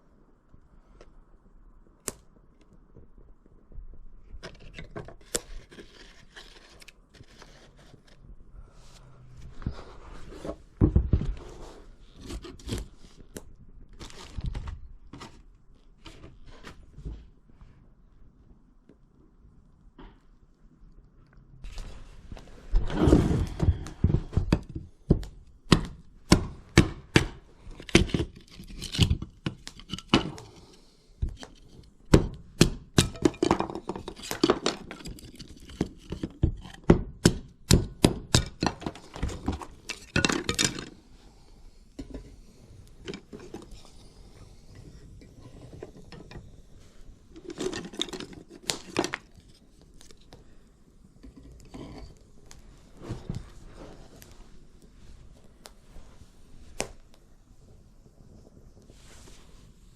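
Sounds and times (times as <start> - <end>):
hard objects knocking and clinking: 32.1 - 40.9, 47.4 - 49.3.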